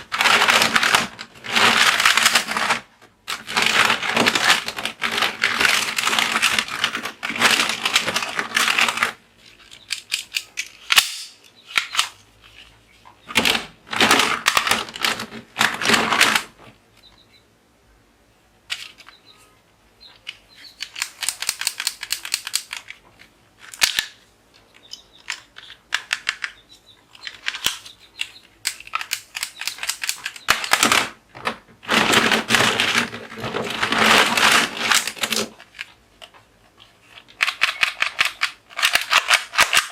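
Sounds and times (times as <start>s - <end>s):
toy pistols firing: 10.0s - 12.0s
sharp clicks: 20.2s - 23.0s.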